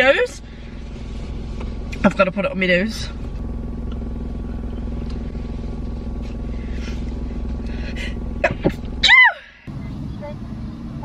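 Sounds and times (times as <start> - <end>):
low hum and rumble: 0.0 - 11.0
faint soft rustles: 0.5 - 2.2.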